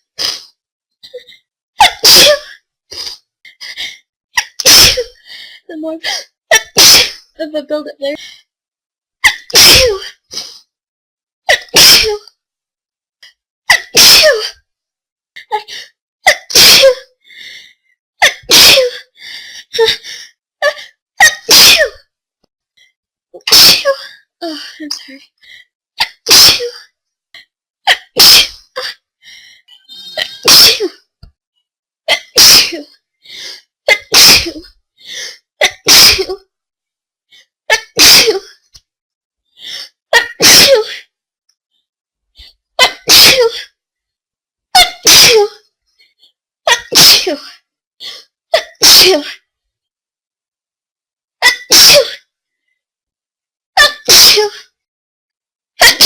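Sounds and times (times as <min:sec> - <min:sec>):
quiet in-breaths: 0:05.2 - 0:06.3, 0:17.3 - 0:18.0, 0:19.2 - 0:20.4, 0:29.2 - 0:30.2
person sneezing: 0:29.9 - 0:31.0.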